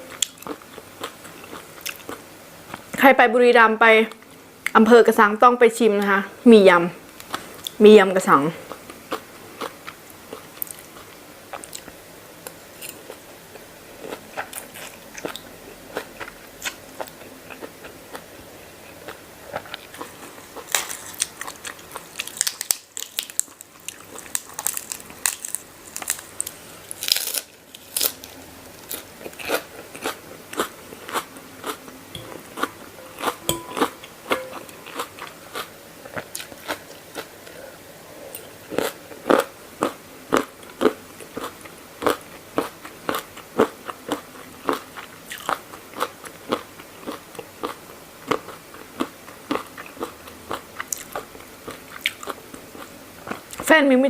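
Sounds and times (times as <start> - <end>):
person chewing crunchy food: 0.1 - 2.8, 18.9 - 37.6, 38.4 - 53.6.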